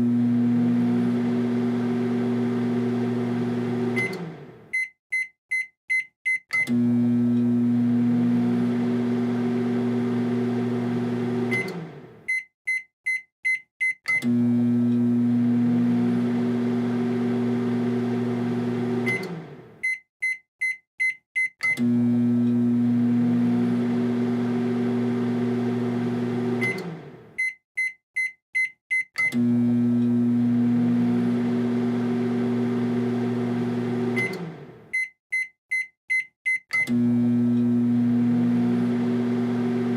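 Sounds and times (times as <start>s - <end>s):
microwave oven humming: 0.0s - 4.6s, 6.7s - 12.2s, 14.2s - 19.8s, 21.8s - 27.4s, 29.3s - 34.9s, 36.9s - 39.9s.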